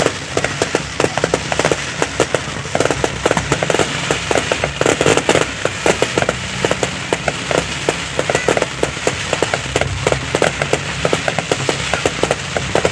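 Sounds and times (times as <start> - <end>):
fireworks crackling: 0.0 - 12.9
low rumble: 5.4 - 12.9.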